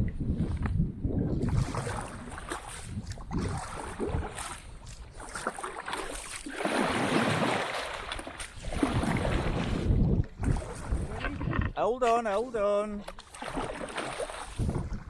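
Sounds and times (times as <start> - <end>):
wind buffeting microphone: 0.0 - 5.5, 8.1 - 12.2, 13.4 - 15.0
water splashing against hull: 0.0 - 15.0
rush of water: 1.4 - 15.0.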